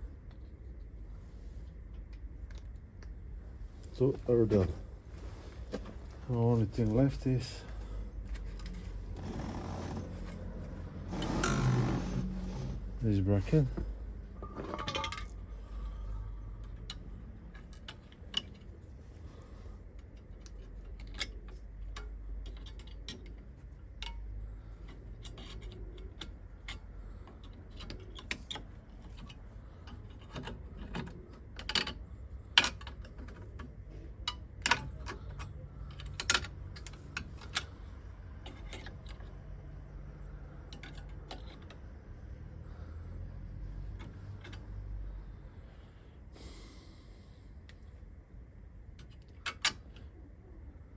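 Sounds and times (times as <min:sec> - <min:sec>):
metallic clicks of brake hardware: 0:13.7 - 0:18.8, 0:20.0 - 0:42.2, 0:43.7 - 0:45.0, 0:48.9 - 0:50.2.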